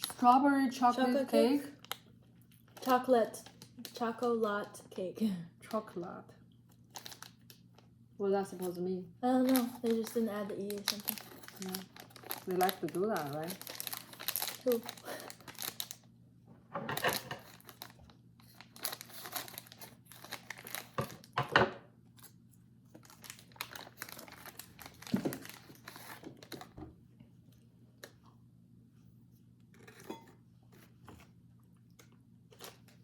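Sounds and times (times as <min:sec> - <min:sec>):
plastic wrapper crinkling and tearing: 0:01.7 - 0:04.5, 0:06.7 - 0:07.9, 0:09.3 - 0:16.1, 0:17.0 - 0:21.4, 0:22.9 - 0:26.7.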